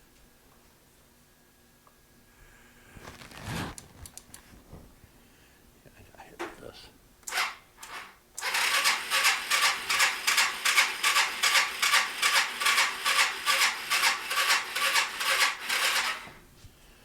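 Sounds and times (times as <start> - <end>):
scooter starter motor cranking: 7.2 - 16.3.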